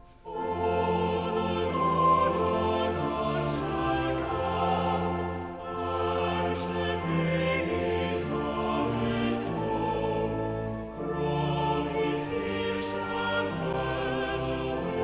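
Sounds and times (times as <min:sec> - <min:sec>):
choir singing a hymn: 0:00.0 - 0:15.0
sustained chordal accompaniment: 0:00.0 - 0:15.0.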